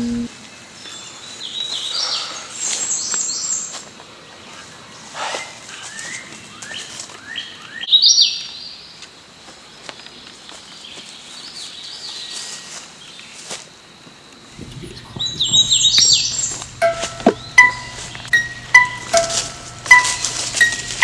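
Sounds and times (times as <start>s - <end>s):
birds chirping: 14.6s - 21.0s
low steady hum: 14.6s - 21.0s.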